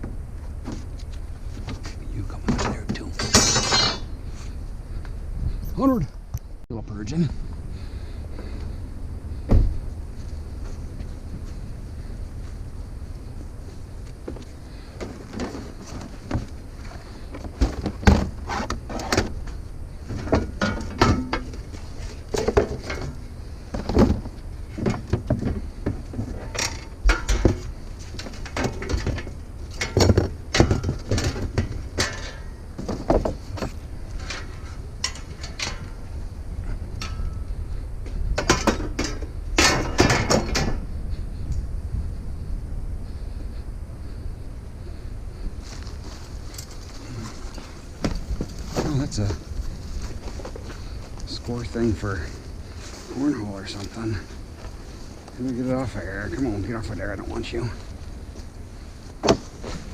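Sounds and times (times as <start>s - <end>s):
truck rumbling: 0.0s - 59.9s
scrap metal rattling: 1.6s - 4.5s, 20.0s - 36.2s.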